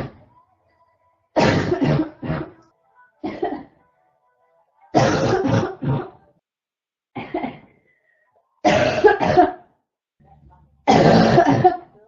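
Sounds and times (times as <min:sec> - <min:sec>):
person coughing harshly: 0:01.4 - 0:02.6, 0:03.2 - 0:03.8, 0:05.0 - 0:06.2, 0:07.2 - 0:07.8, 0:08.6 - 0:09.7, 0:10.9 - 0:12.0.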